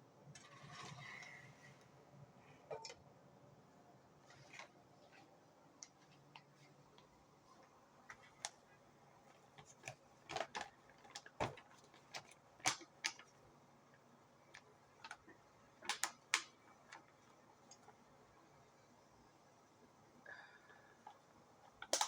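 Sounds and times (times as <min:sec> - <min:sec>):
small objects clicking and tapping: 0:21.1 - 0:22.0.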